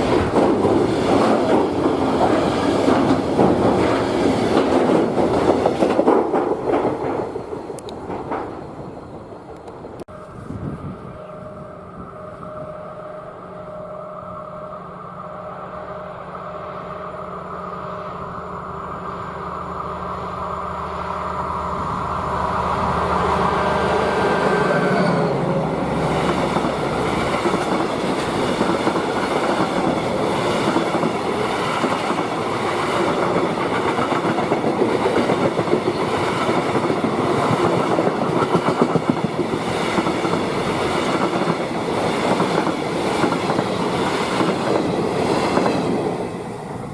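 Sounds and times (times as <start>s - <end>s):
train wheels clattering over rail joints: 0.0s - 8.7s
locomotive hum: 0.0s - 46.9s.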